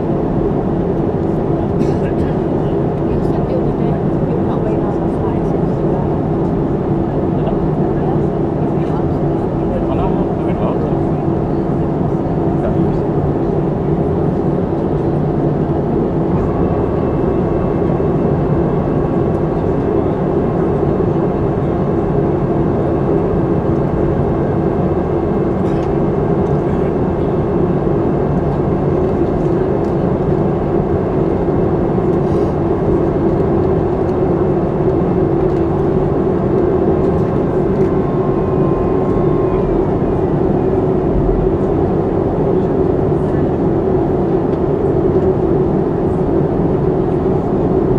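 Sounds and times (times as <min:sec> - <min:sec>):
jet engines whooshing hum: 0:00.0 - 0:47.9.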